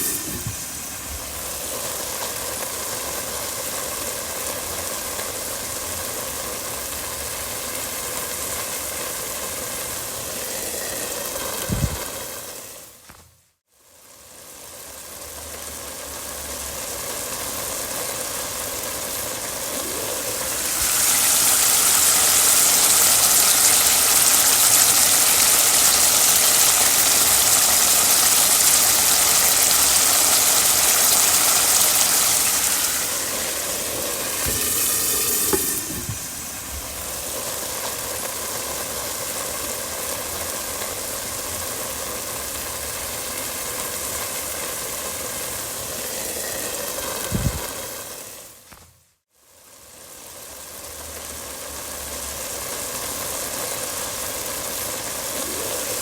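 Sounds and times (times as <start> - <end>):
food sizzling in a hot pan: 0.0 - 56.0.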